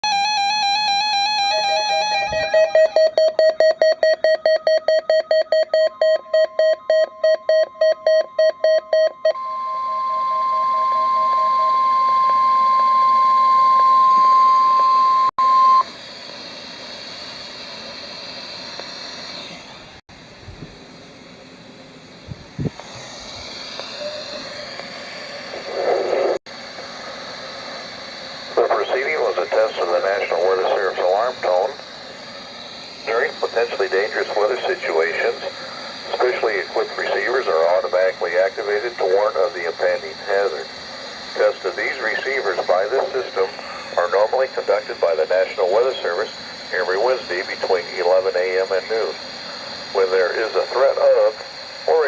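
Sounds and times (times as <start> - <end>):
electronic alarm beeping: 0.0 - 15.9, 23.9 - 24.7
faint steady high tone: 9.2 - 15.8
radio static hiss: 22.2 - 52.0.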